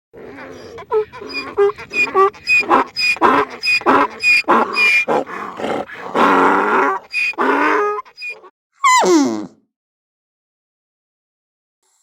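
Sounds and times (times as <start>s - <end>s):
animal short rough calls: 0.3s - 9.1s.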